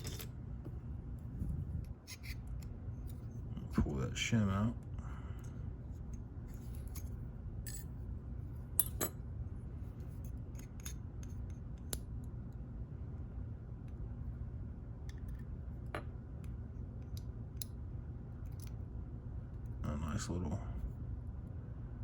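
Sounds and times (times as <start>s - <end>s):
metal lock parts clicking: 0.0s - 0.3s
steady low hum: 0.0s - 22.0s.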